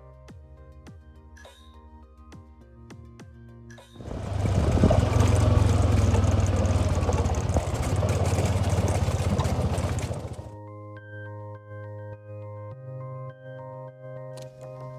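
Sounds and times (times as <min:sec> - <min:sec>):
engine droning: 0:04.0 - 0:10.5.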